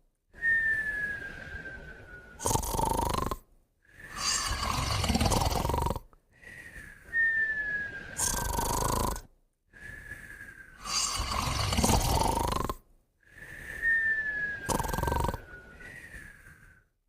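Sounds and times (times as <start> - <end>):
whistling breath: 0.3 - 3.2, 3.8 - 12.6, 13.2 - 17.0
loud rattling snore: 2.4 - 3.4, 4.0 - 6.1, 8.2 - 9.3, 10.8 - 12.8, 14.6 - 15.5.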